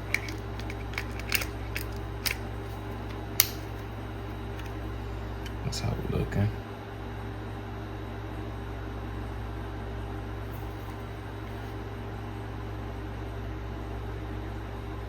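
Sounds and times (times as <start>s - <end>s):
low mechanical hum: 0.0s - 15.0s.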